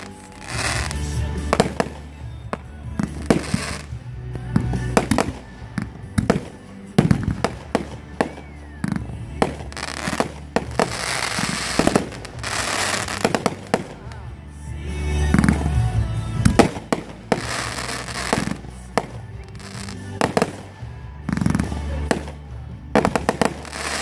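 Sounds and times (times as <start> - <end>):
fireworks hissing: 0.0 - 2.4, 3.0 - 8.8, 9.4 - 14.2, 16.6 - 22.1, 23.0 - 24.0
fireworks bangs: 0.0 - 14.3, 16.4 - 24.0.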